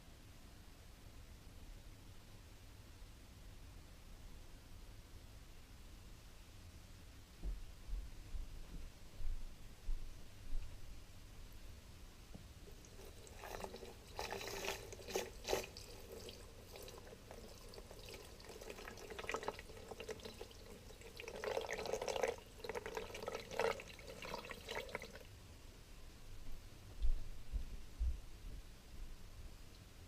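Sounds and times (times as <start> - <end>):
water pouring into aquarium: 12.7 - 25.3.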